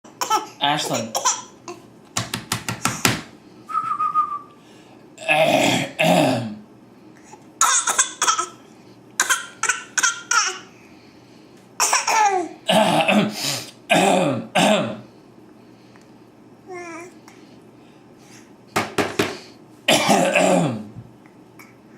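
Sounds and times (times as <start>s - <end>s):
child coughing: 0.1s - 1.6s, 7.6s - 8.6s, 9.2s - 10.6s, 11.8s - 15.0s, 19.9s - 20.9s.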